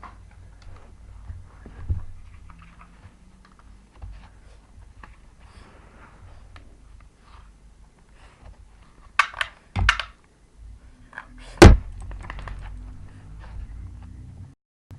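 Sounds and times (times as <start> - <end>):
clacks and knocks of scuffling: 0.0 - 5.4
heavy thump: 11.6 - 12.0.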